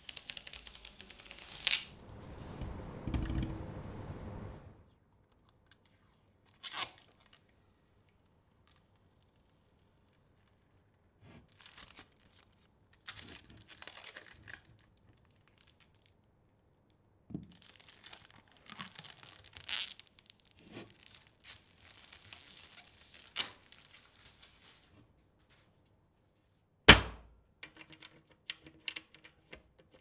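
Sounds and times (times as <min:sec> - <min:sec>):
plastic packaging crinkling and tearing: 0:00.0 - 0:02.1, 0:11.6 - 0:14.9, 0:17.5 - 0:25.6.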